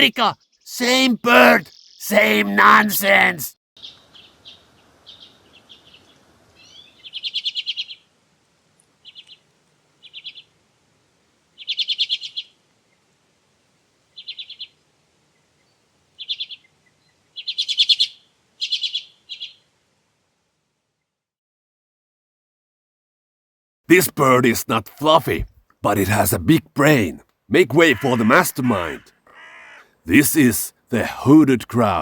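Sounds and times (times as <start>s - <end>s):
bird chattering trills: 27.7s - 29.8s.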